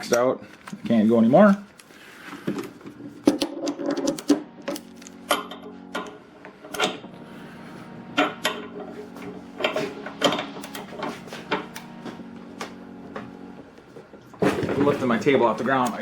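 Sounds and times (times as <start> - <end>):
steady low hum: 4.2 - 16.0.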